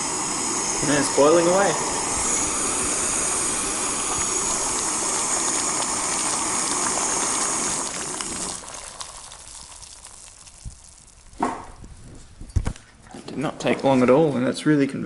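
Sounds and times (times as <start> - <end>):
gas burner hiss: 0.0 - 12.1
water bubbling: 1.5 - 11.9.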